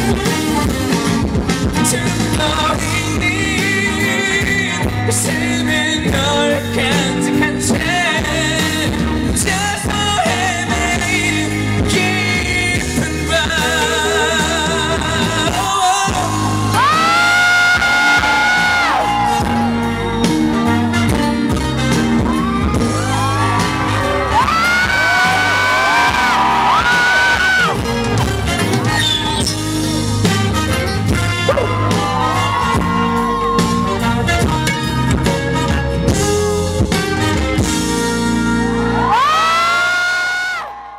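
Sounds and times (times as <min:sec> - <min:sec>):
lead singer holding long notes: 0:00.0 - 0:40.7
live pop ballad by band: 0:00.0 - 0:40.9.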